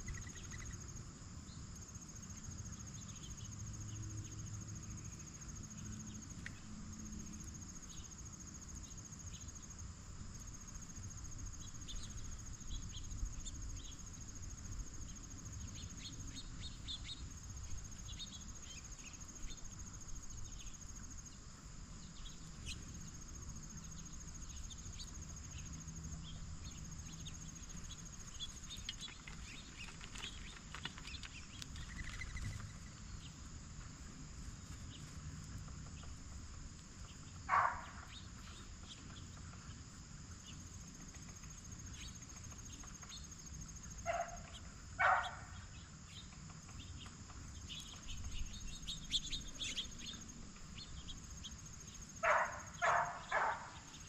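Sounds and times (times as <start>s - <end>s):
short insect chirps and clicks: 0.0s - 1.0s, 22.1s - 33.4s, 40.4s - 54.0s
crickets trilling: 0.0s - 54.0s.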